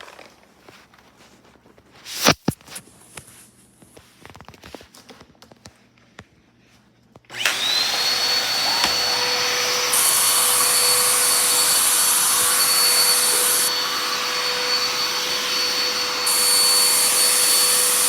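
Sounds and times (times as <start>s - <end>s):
vacuum cleaner motor whine: 7.3s - 18.0s.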